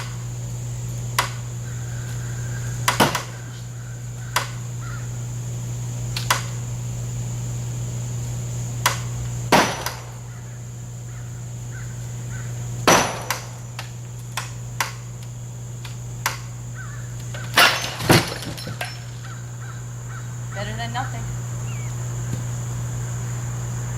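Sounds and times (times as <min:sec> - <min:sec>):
axe striking metal frame: 0:02.8 - 0:03.4, 0:08.8 - 0:10.1, 0:12.8 - 0:13.5, 0:17.5 - 0:19.1.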